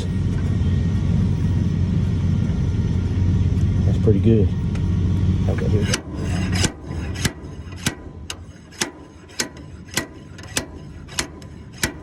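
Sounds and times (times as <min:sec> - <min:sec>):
slide hammer metallic clanks: 0:05.6 - 0:12.0.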